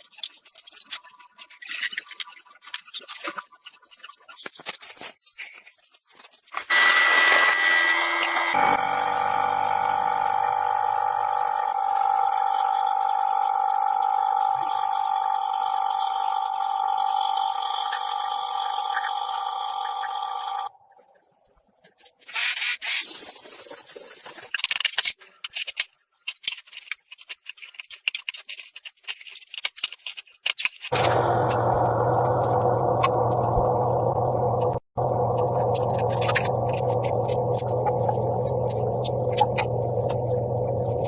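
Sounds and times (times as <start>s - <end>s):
power tool whining: 6.7s - 20.7s, 30.9s - 41.0s
loud burst of noise: 8.5s - 20.6s, 30.9s - 41.0s.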